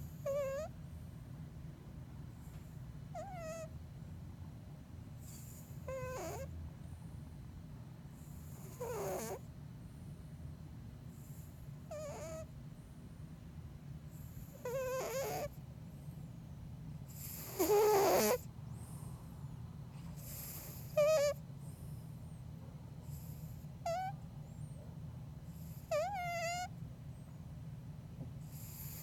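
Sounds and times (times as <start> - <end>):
cat snoring with squeaky whistles: 0.0 - 0.7, 3.1 - 3.7, 5.2 - 6.5, 8.2 - 9.5, 11.1 - 12.5, 14.1 - 15.6, 17.1 - 18.5, 20.2 - 21.4, 23.0 - 24.7, 25.5 - 26.7, 28.4 - 29.0
faint low hum: 0.0 - 29.0.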